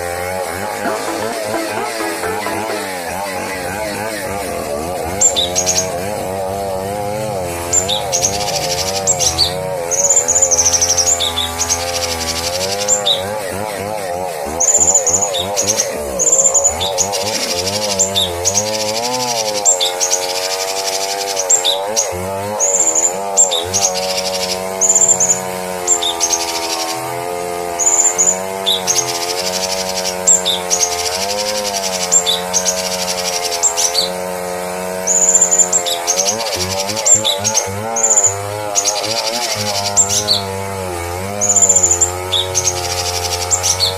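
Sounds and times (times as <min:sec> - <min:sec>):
wavering low tone: 0:00.8 - 0:05.2.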